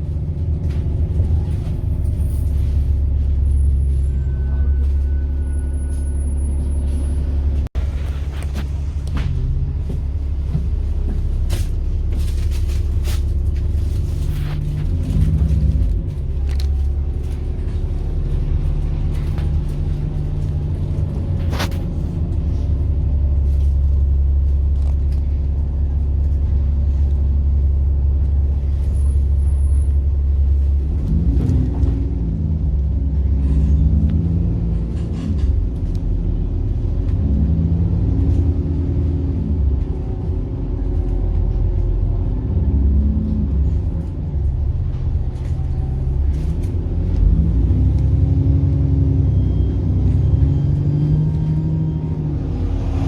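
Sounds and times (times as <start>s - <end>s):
bus engine droning: 0.0s - 53.0s.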